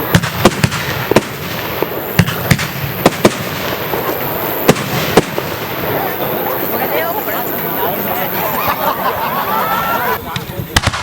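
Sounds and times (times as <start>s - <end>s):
firework shells bursting: 0.0s - 8.9s, 10.2s - 11.0s
steady background hiss: 0.0s - 11.0s.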